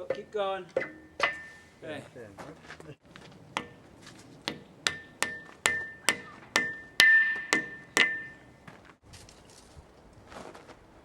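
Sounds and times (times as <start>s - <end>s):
hammer striking steel: 0.0s - 1.8s, 3.5s - 8.6s.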